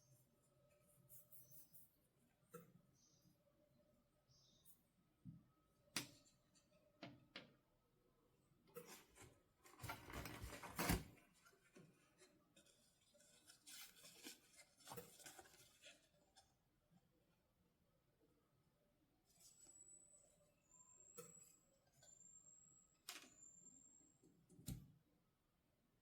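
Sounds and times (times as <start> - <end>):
packaging rustling and rubbing: 8.8 - 16.4.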